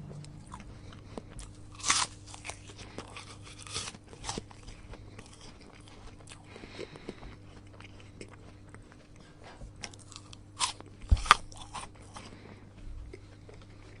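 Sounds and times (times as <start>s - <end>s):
apple chewing crunches: 0.0s - 14.0s
faint steady hum: 0.0s - 14.0s
loud apple bite crunches: 1.4s - 8.5s, 9.9s - 12.4s.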